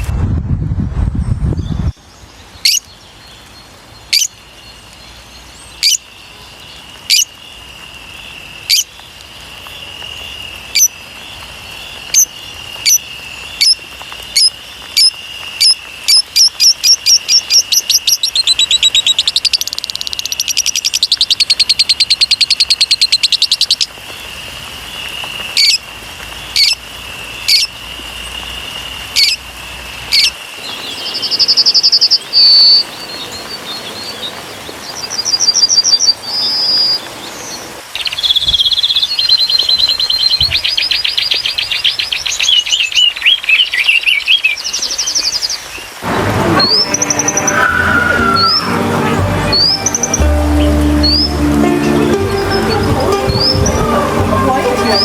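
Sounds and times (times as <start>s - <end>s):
low rumble: 0.0s - 2.0s
bird chirping and trilling: 1.2s - 3.0s, 4.0s - 4.4s, 5.6s - 6.2s, 12.1s - 13.0s, 14.4s - 23.9s, 46.6s - 55.0s.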